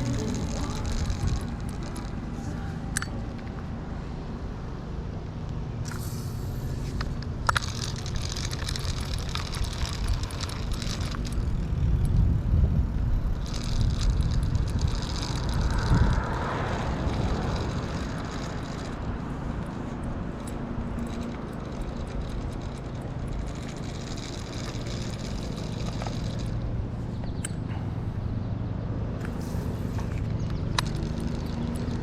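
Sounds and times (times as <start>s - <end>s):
wind on microphone: 0.0s - 3.3s, 7.8s - 27.0s
bicycle clicks and rattles: 0.0s - 3.9s, 5.3s - 28.4s, 29.0s - 32.0s
bicycle road noise: 0.0s - 32.0s.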